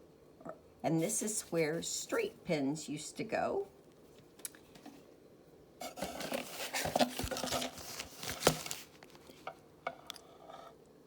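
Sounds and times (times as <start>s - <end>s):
paper packets rustling: 5.8s - 9.6s.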